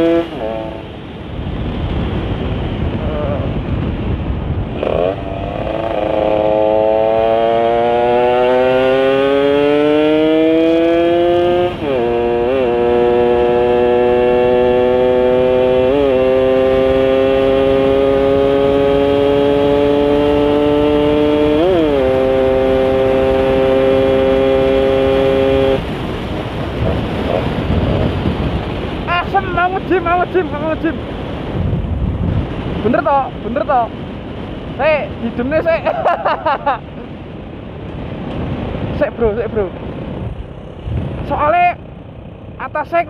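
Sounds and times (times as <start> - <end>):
two-stroke engine revving: 0.0 - 1.0, 4.7 - 26.0.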